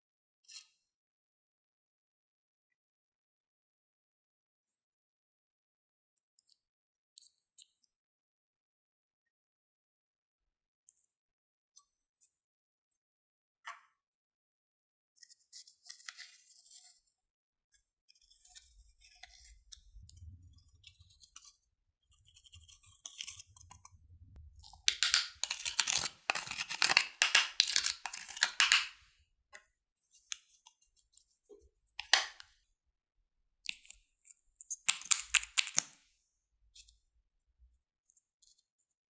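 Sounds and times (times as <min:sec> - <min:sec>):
slime squelching and crackling: 0:20.0 - 0:29.0.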